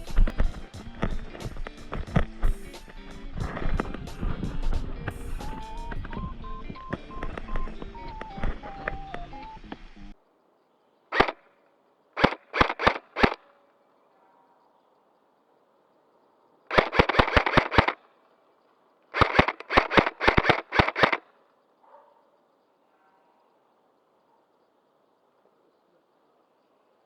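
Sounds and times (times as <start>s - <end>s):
background music: 0.0s - 10.2s
airsoft guns firing: 11.1s - 11.4s, 12.2s - 13.6s, 16.7s - 18.1s, 19.1s - 21.3s.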